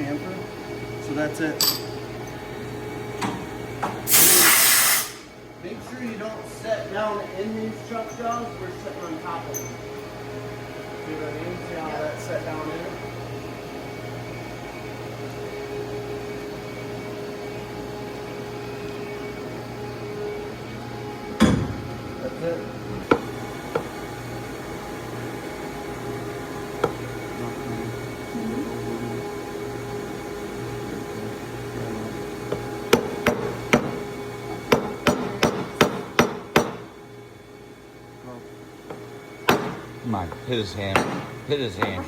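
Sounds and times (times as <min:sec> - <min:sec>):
steady machine whine: 0:00.0 - 0:04.4, 0:05.0 - 0:42.0
machine hum: 0:05.1 - 0:42.0
hammer tapping on metal: 0:32.5 - 0:36.9, 0:38.9 - 0:42.0.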